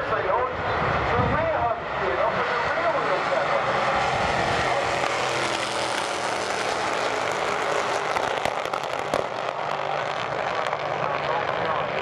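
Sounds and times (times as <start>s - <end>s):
racing car engine running hard: 0.0s - 12.0s
sharp cracks: 7.1s - 11.0s.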